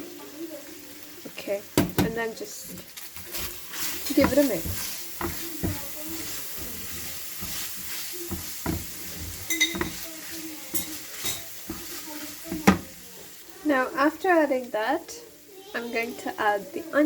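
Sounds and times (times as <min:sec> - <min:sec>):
meat sizzling in oil: 0:00.0 - 0:17.0
utensil scraping a frying pan: 0:02.4 - 0:13.4.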